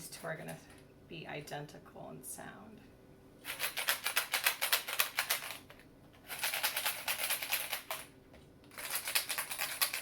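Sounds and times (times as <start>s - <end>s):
egg shaker rattling: 3.4s - 8.1s, 8.7s - 10.0s.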